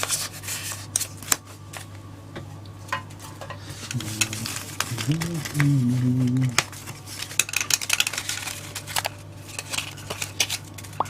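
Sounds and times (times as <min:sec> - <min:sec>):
faint low hum: 0:03.7 - 0:07.6
cards rustling and tapping: 0:03.8 - 0:11.0.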